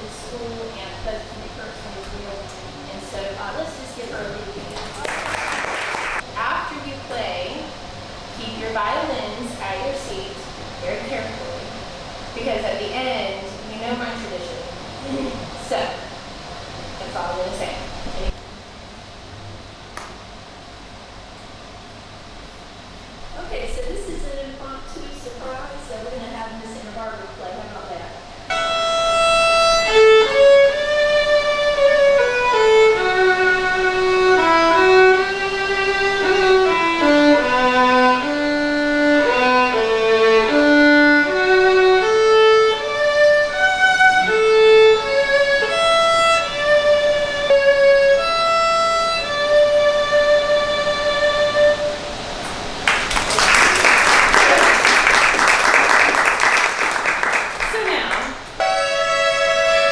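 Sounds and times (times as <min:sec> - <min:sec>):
audience applause: 0:04.6 - 0:06.2, 0:52.4 - 0:58.6
solo violin melody: 0:28.5 - 0:52.4, 0:58.6 - 0:59.9.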